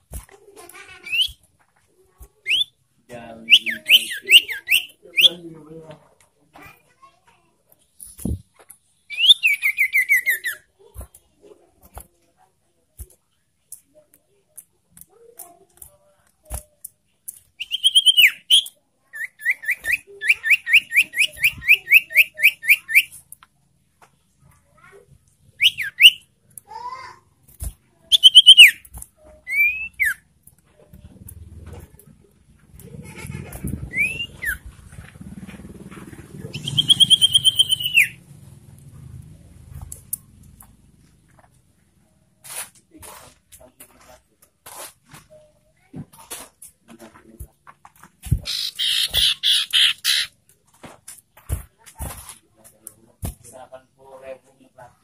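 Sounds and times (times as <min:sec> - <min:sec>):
bird whistling calls: 0:02.5 - 0:02.7, 0:03.5 - 0:05.4, 0:17.6 - 0:23.1, 0:28.1 - 0:28.8, 0:29.5 - 0:30.2, 0:33.9 - 0:34.6, 0:36.5 - 0:38.2, 0:48.4 - 0:50.3
rapid whistled notes: 0:33.9 - 0:34.6, 0:36.5 - 0:38.2.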